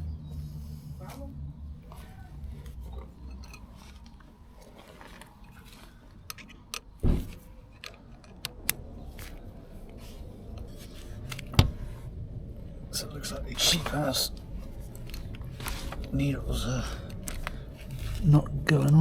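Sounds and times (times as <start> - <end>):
metal tool clicking and clinking: 3.2 - 4.2.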